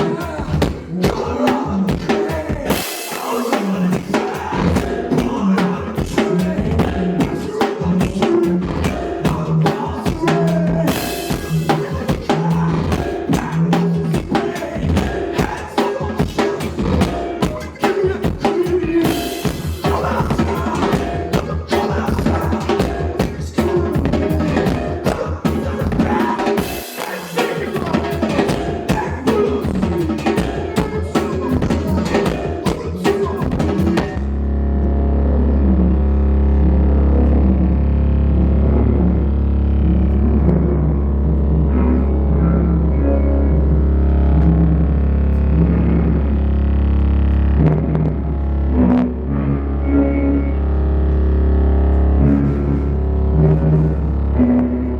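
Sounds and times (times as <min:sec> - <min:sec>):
live band playing: 0:00.0 - 0:34.2
drum kit: 0:00.0 - 0:34.3.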